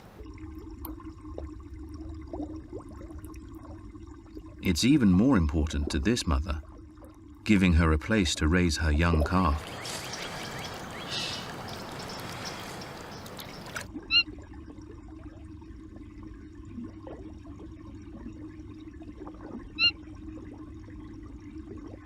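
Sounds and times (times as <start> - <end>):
underwater hum: 0.0 - 4.6, 9.2 - 22.0
water rushing and bubbling: 9.2 - 22.0
manatee squeaky chirps: 9.5 - 14.2, 19.8 - 20.0.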